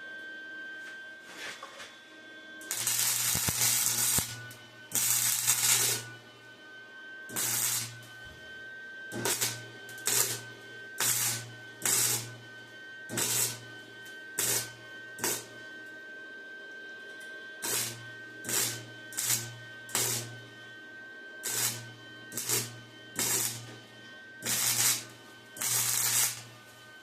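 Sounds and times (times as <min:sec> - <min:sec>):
welder arc crackling: 0:02.6 - 0:06.1, 0:07.3 - 0:08.1, 0:09.2 - 0:12.4, 0:13.1 - 0:13.6, 0:14.4 - 0:15.5, 0:17.6 - 0:20.3, 0:21.4 - 0:23.8, 0:24.4 - 0:26.6.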